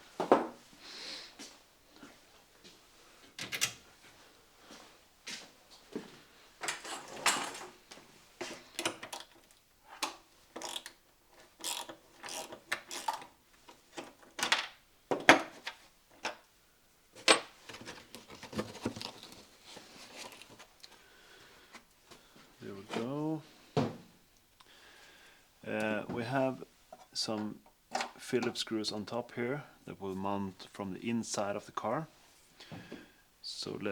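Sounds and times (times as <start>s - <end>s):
car parts and tools clicking: 8.7s - 16.5s.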